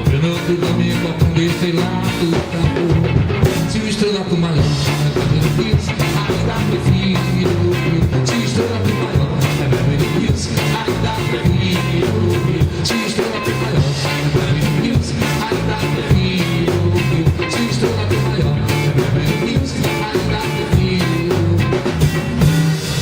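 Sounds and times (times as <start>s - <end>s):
live band playing: 0.0s - 23.0s.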